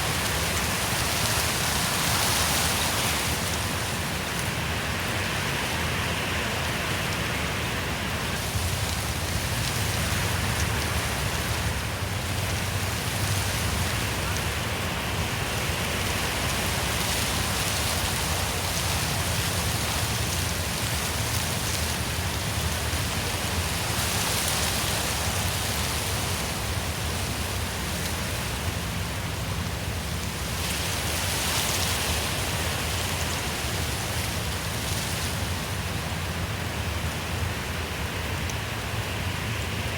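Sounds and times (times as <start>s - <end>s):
wind rushing through trees: 0.0s - 39.9s.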